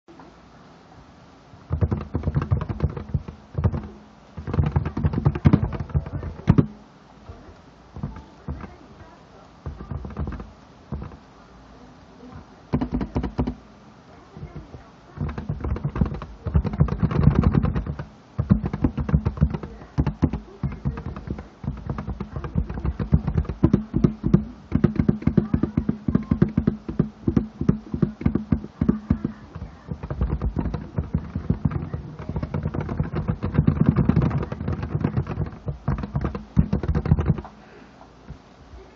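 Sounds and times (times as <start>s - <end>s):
soft keyboard keystrokes: 1.7s - 6.7s, 8.0s - 8.8s, 9.7s - 11.2s, 14.4s - 37.5s.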